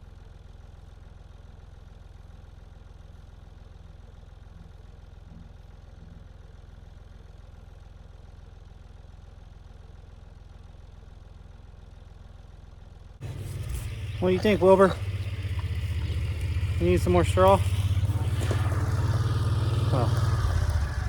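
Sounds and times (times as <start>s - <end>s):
tractor engine droning: 13.2s - 21.0s.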